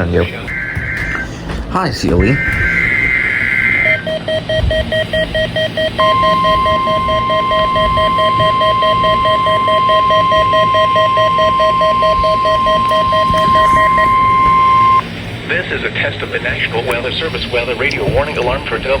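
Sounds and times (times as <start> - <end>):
steady warning alarm tone: 0.0 - 15.5
rapid pulsed alert beeps: 2.2 - 15.0.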